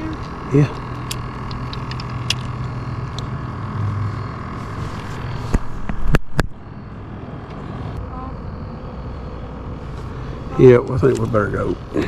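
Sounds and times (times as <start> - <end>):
boat motor running: 0.0 - 12.0.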